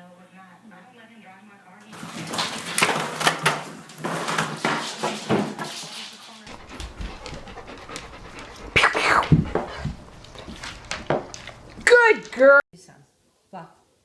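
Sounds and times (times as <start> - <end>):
dog panting: 6.5 - 12.5.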